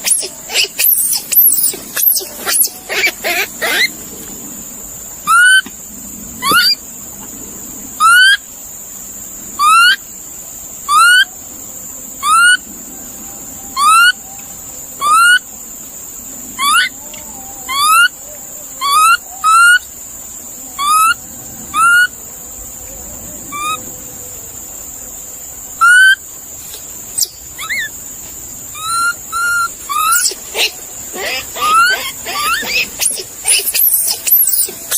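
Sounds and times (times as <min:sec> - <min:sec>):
steady high hiss: 0:00.0 - 0:34.9.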